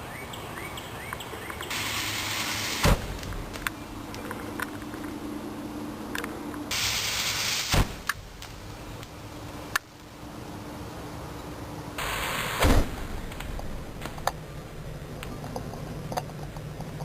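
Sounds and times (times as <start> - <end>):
powder flashing hiss: 1.7 - 3.6, 6.7 - 9.2, 12.0 - 14.0.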